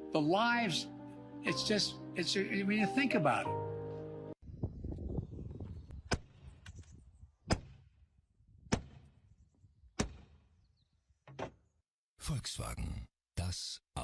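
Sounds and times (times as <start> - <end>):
sharp knocks: 10.0 - 10.4.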